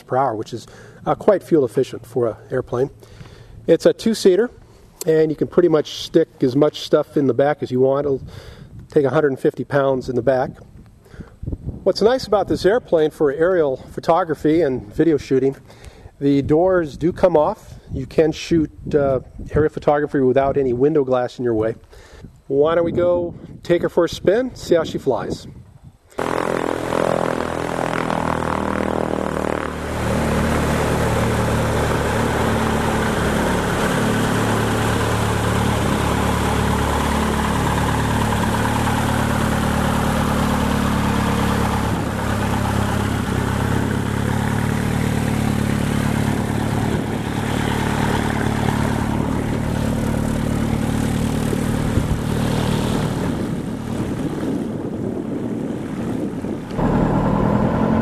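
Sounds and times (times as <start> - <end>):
propeller aircraft engine running: 0.0 - 3.9, 26.2 - 58.0.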